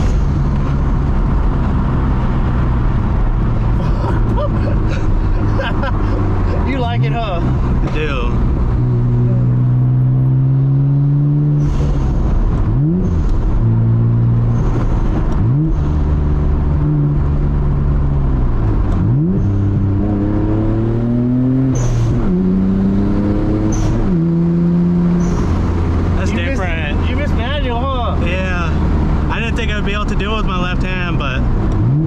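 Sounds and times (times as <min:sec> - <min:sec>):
car accelerating hard through gears: 0:00.0 - 0:27.1.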